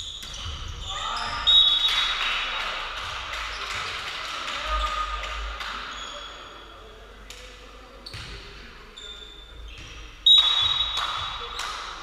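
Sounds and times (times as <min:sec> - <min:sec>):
shouts and cheering in a hall: 0:00.0 - 0:07.0.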